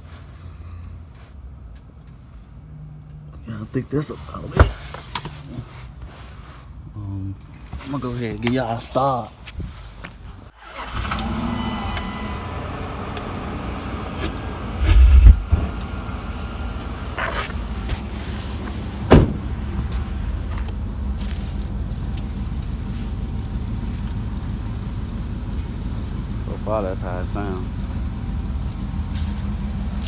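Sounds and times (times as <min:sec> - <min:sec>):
car engine starting and idling: 0:10.5 - 0:30.0
engine rev: 0:10.6 - 0:30.0.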